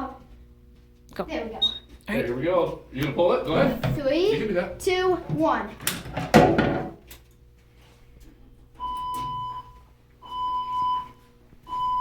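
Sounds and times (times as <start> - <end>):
fire alarm beeping: 8.8 - 12.0.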